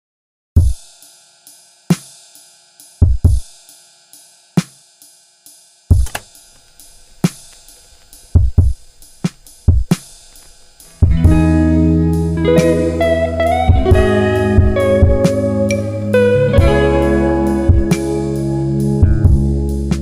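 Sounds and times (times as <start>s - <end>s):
cymbal and snare strokes: 0.6s - 20.0s
light hi-hat ticks: 0.7s - 16.9s
heavy kick drum hits: 8.4s - 8.8s, 13.7s - 15.2s.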